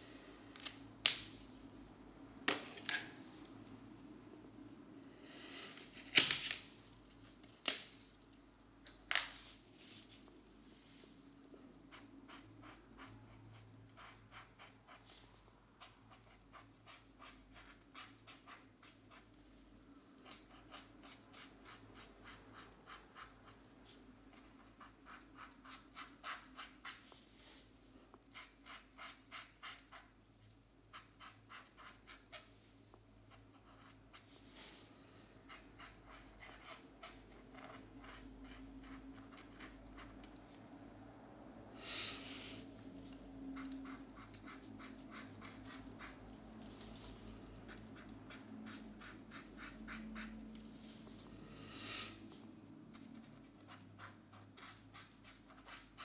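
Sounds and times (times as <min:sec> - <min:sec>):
markers scratching on paper: 0:43.5 - 0:50.5, 0:52.9 - 0:56.0.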